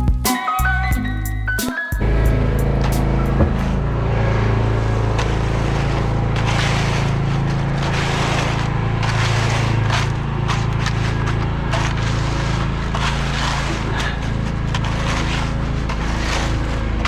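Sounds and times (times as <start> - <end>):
engine droning: 2.0 - 17.0
clicks and scraping knocks: 2.2 - 17.0.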